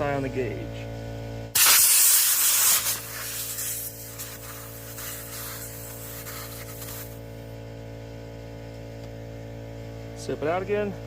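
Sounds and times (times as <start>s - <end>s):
compressed air hissing from tire: 1.6s - 7.4s.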